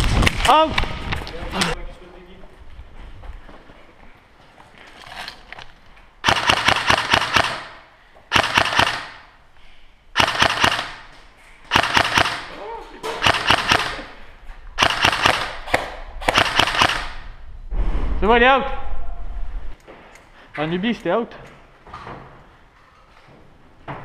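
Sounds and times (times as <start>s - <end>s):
airsoft rifle full-auto shots: 6.2s - 9.4s, 10.2s - 11.1s, 11.7s - 12.5s, 13.2s - 14.1s, 14.8s - 17.3s.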